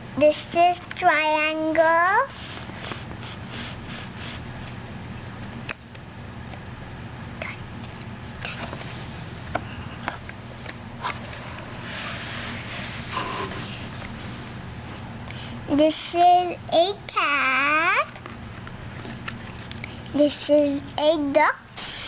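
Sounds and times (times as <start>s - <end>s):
steady low hum: 0.0s - 22.0s
book pages turning: 2.4s - 6.6s, 7.8s - 14.5s, 18.1s - 20.2s.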